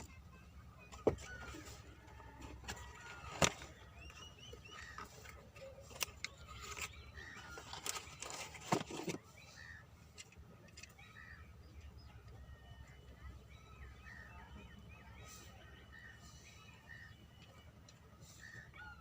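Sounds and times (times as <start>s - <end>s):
faint bird chirps: 10.6s - 19.0s.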